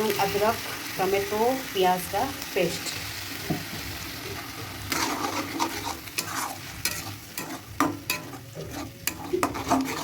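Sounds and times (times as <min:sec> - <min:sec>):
paste sizzling in hot oil: 0:00.0 - 0:10.0
spoon scraping and clicking in pan: 0:04.9 - 0:10.0.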